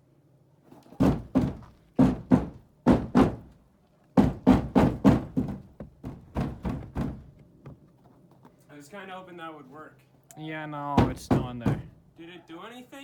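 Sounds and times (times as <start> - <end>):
banging on wooden coop: 1.0 - 3.5, 4.2 - 7.8, 11.0 - 12.0.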